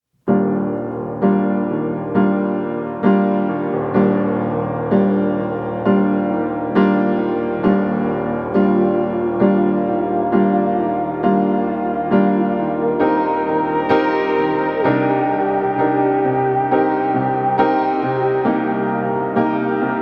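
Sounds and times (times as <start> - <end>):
slow piano chords: 0.2 - 20.0.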